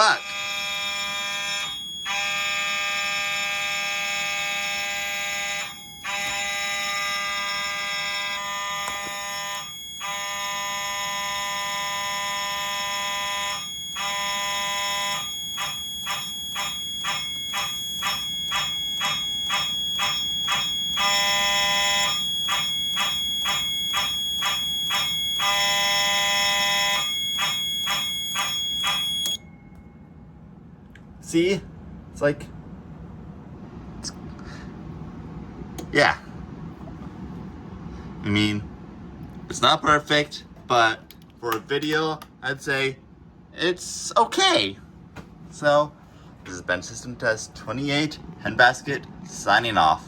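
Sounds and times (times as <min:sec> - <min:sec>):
fire alarm sounder pulsing: 0:00.0 - 0:30.4
steady high-pitched alarm tone: 0:00.0 - 0:30.7.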